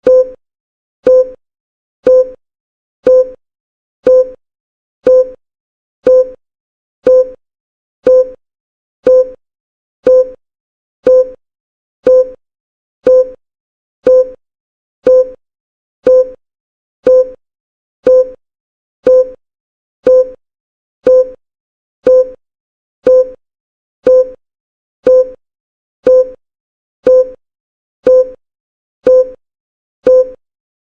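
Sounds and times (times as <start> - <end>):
countdown timer blips: 0.0 - 0.4, 1.0 - 1.4, 2.0 - 2.4, 3.0 - 3.4, 4.0 - 4.4, 5.0 - 5.4, 6.0 - 6.4, 7.0 - 7.4, 8.0 - 8.4, 9.0 - 9.4, 10.0 - 10.4, 11.0 - 11.4, 12.0 - 12.4, 13.0 - 13.4, 14.0 - 14.4, 15.0 - 15.4, 16.0 - 16.4, 17.0 - 17.4, 18.0 - 18.4, 19.0 - 19.4, 20.0 - 20.4, 21.0 - 21.4, 22.0 - 22.4, 23.0 - 23.4, 24.0 - 24.4, 25.0 - 25.4, 26.0 - 26.4, 27.0 - 27.4, 28.0 - 28.4, 29.0 - 29.4, 30.0 - 30.4.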